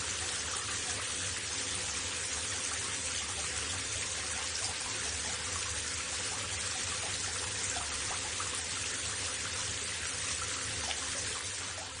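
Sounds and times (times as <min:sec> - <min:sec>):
running water hiss: 0:00.0 - 0:12.0
water trickling: 0:00.0 - 0:12.0.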